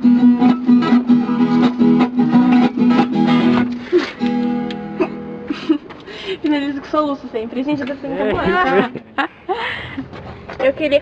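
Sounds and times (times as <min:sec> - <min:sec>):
acoustic guitar strumming: 0:00.0 - 0:05.8.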